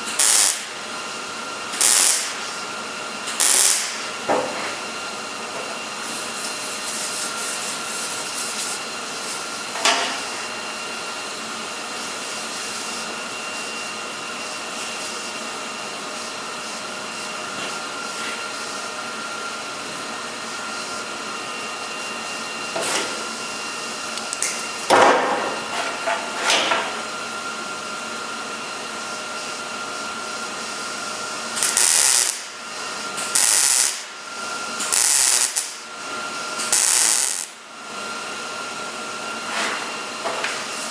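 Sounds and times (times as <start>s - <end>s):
mig welder welding: 0.0s - 15.4s, 22.7s - 27.1s, 29.8s - 38.0s, 40.4s - 40.9s.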